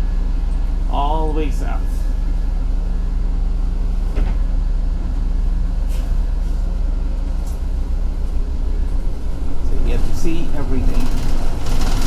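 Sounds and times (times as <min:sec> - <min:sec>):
bus interior rumble: 0:00.0 - 0:12.0.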